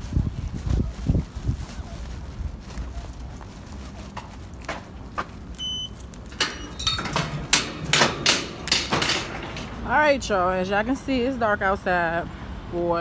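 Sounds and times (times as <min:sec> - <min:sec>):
clicks and knocks: 0:06.3 - 0:09.8.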